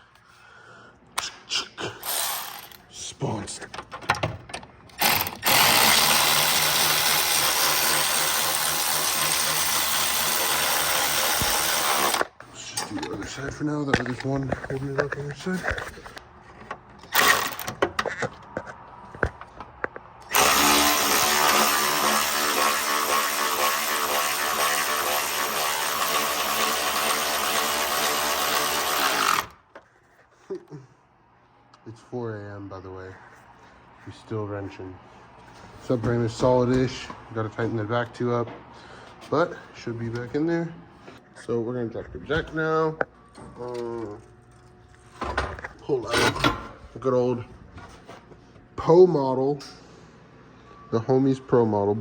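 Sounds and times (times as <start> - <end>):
impact wrench hammering: 2.0 - 2.8, 4.9 - 12.3, 17.1 - 17.8, 20.2 - 29.5.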